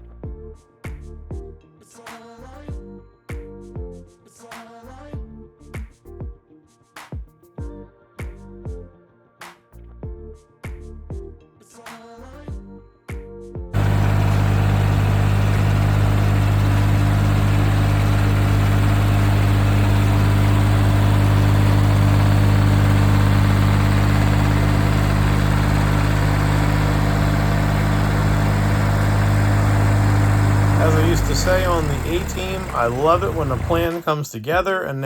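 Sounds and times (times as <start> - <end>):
music: 0.0 - 14.5
heavy diesel engine running: 13.8 - 34.1.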